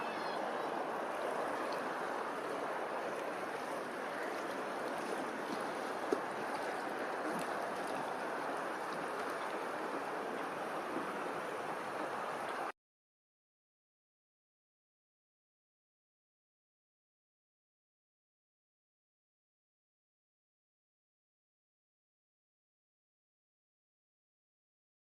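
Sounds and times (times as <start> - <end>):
running water rushing: 0.0 - 12.7.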